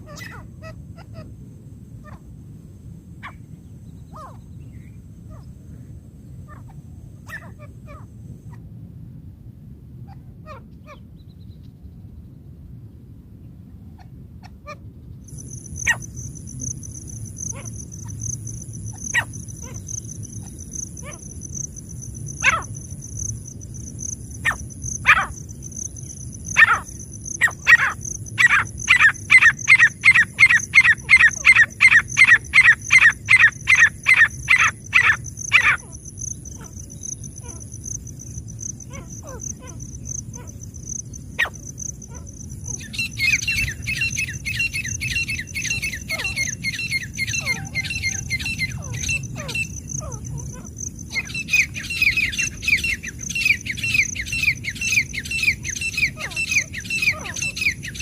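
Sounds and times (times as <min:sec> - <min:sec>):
francolin calling: 0:15.2 - 0:58.0.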